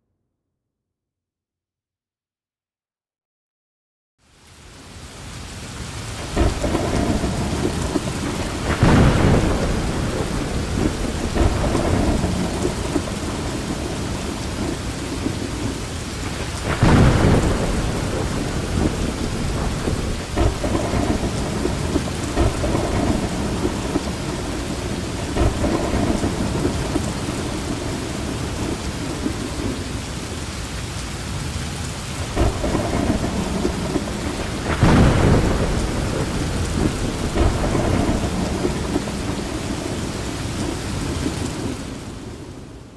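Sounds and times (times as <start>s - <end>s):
heavy rain falling: 4.2s - 42.9s
deep rumble: 16.6s - 28.0s.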